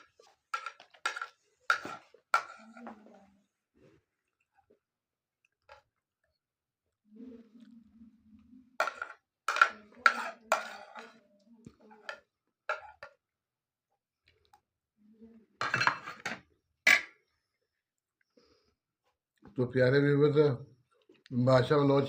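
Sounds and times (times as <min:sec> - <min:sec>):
dishes and cutlery clattering: 0:00.0 - 0:03.0, 0:08.8 - 0:11.2, 0:11.9 - 0:13.2, 0:15.6 - 0:17.2.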